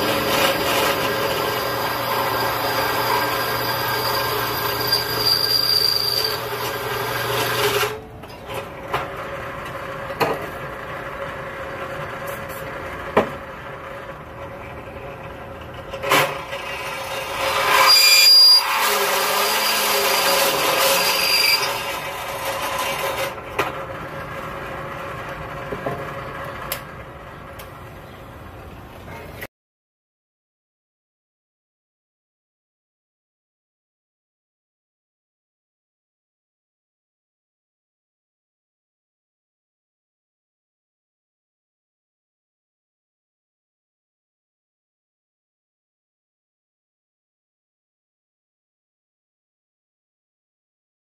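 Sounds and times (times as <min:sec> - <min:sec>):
power tool running: 0:00.0 - 0:08.0, 0:15.9 - 0:26.8.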